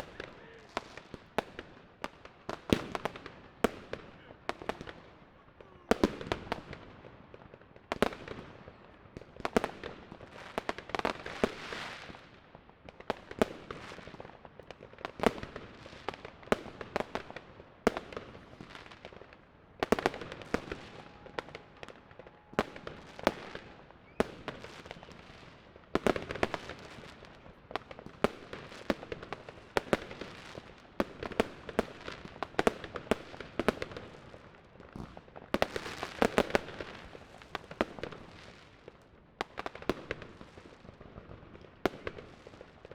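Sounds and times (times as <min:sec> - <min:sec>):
firecrackers crackling: 0:00.0 - 0:42.9
fireworks bangs: 0:15.2 - 0:38.7.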